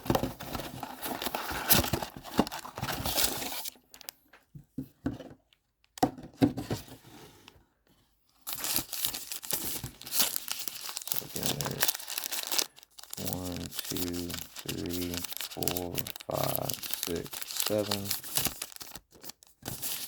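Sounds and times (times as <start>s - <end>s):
packaging tearing and crinkling: 0.5s - 4.1s, 8.4s - 20.0s.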